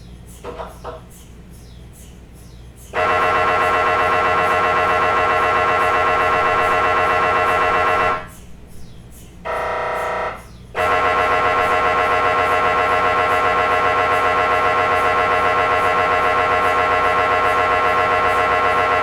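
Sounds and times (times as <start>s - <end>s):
mri scanner buzzing: 3.0s - 8.5s, 9.4s - 19.0s.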